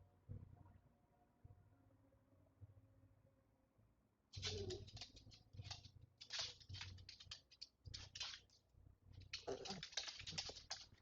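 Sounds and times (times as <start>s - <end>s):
dog claws clicking on floor: 4.4s - 11.0s.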